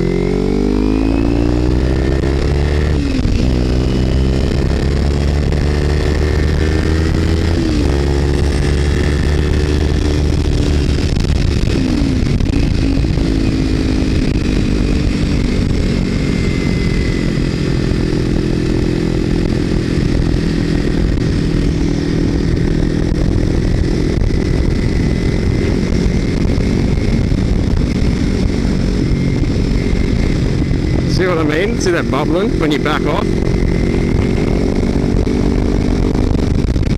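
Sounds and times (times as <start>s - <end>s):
motorcycle engine running: 0.0s - 36.9s.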